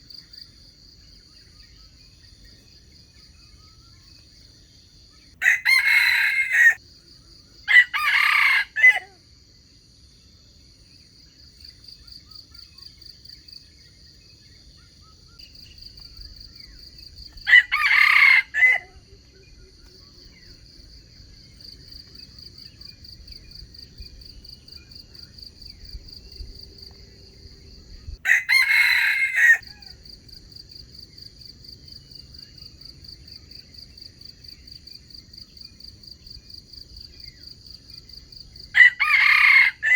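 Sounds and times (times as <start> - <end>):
rooster crowing: 5.4 - 6.8, 7.7 - 9.2, 17.4 - 19.1, 28.2 - 30.0, 38.7 - 39.9.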